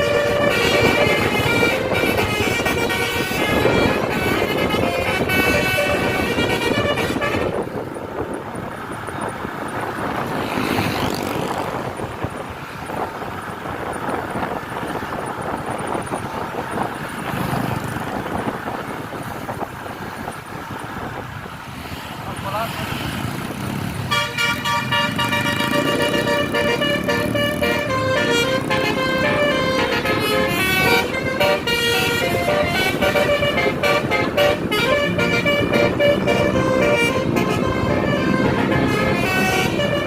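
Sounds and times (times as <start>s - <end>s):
multi-tone bus horn tune: 0.0s - 7.8s, 24.1s - 40.0s
bus engine: 0.0s - 40.0s
traffic noise: 0.0s - 40.0s.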